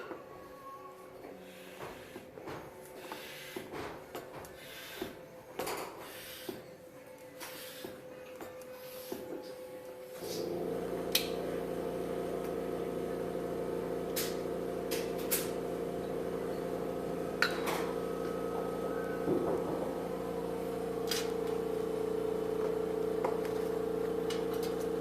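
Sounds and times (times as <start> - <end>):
electric motor hum: 10.2 - 25.0.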